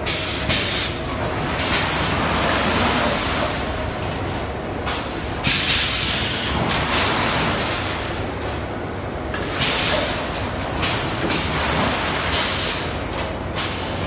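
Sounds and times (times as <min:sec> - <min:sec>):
die-cutting machinery running: 0:00.0 - 0:14.0.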